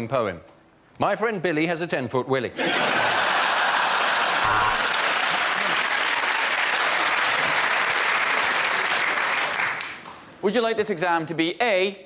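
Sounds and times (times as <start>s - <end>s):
audience applauding: 2.6s - 10.0s.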